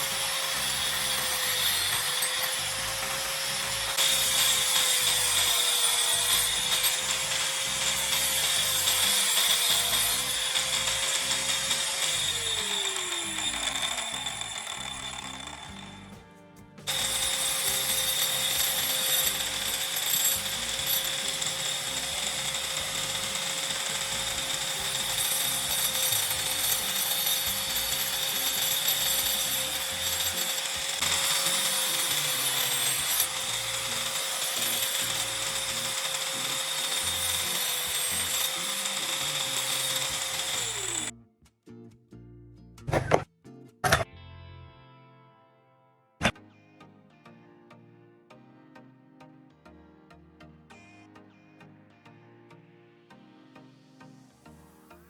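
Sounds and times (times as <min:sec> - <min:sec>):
angle grinder whining: 0:00.0 - 0:16.3, 0:16.9 - 0:41.1.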